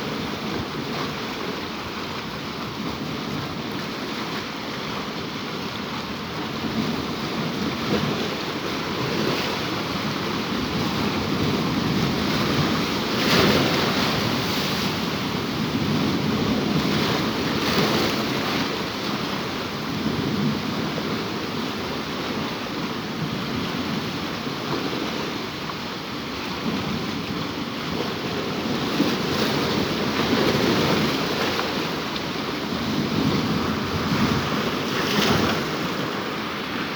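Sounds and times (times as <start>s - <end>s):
waves breaking over rocks: 26.4s - 36.9s.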